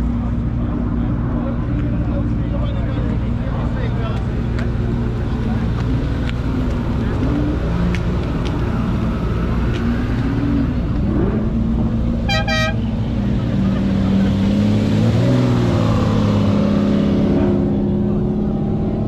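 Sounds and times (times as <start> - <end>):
car engines running: 0.0 - 19.0
car horn toots: 12.3 - 12.9.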